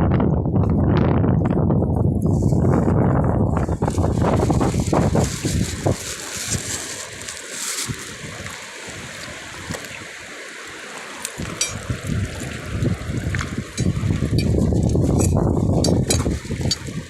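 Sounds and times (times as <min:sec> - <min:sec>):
wind buffeting microphone: 0:00.0 - 0:17.0
water washing: 0:03.5 - 0:17.0.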